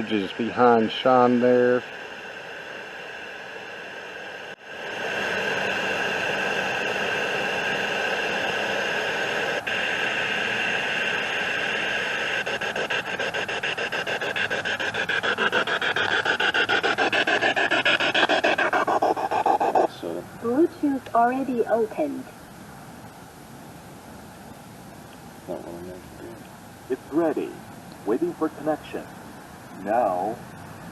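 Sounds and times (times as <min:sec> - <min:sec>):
radio static hissing: 0:00.0 - 0:30.9.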